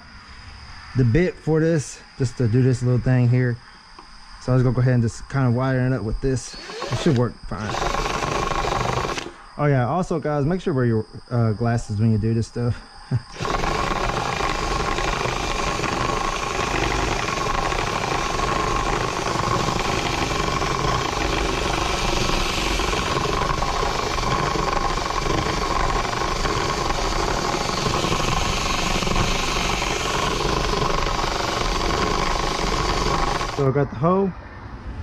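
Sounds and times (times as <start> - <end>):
power tool cutting plastic: 6.4 - 9.4, 13.3 - 33.6.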